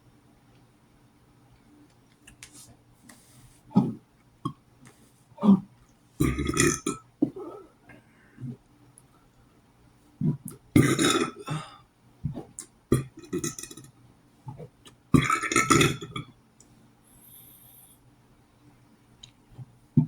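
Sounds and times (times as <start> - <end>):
person burping loudly: 5.4 - 7.7, 10.2 - 11.8, 12.9 - 13.8, 15.2 - 16.2.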